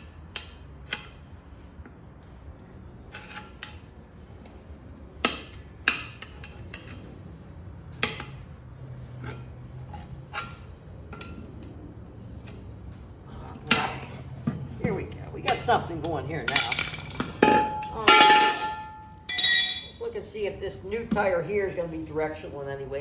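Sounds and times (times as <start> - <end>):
hand tools clanking on metal: 13.6 - 20.1.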